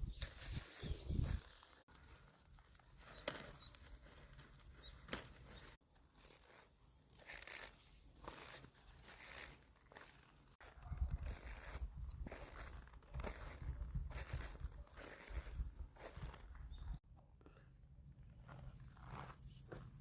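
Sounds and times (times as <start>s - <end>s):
lettuce leaves rustling: 0.2s - 10.4s
lettuce leaves snapping: 2.6s - 5.8s.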